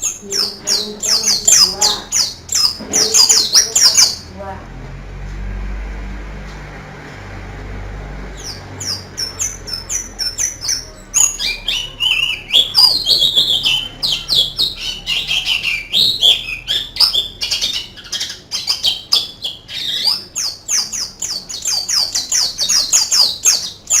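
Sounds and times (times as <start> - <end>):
bird singing chirps and trills: 0.0 - 4.5, 8.3 - 24.0.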